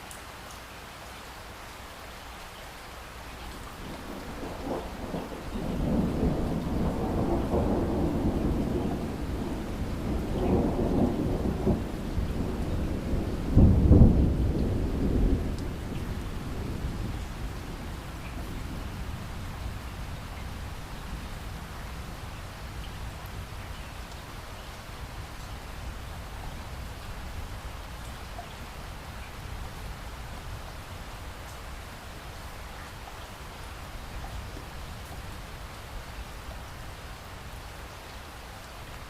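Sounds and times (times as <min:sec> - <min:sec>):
steady rain: 0:00.0 - 0:39.0
thunder rolling: 0:03.8 - 0:21.2.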